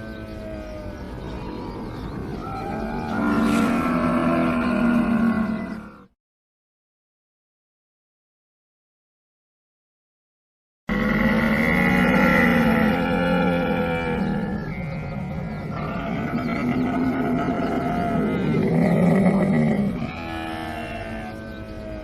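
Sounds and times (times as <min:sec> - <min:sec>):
camel calling: 0:00.0 - 0:06.0, 0:10.9 - 0:22.0.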